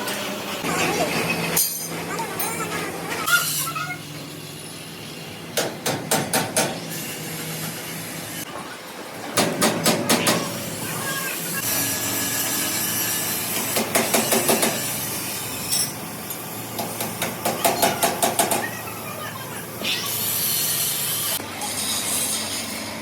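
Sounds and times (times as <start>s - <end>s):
workshop noise: 0.0s - 23.0s
hammer strikes: 5.6s - 6.8s, 13.6s - 14.9s.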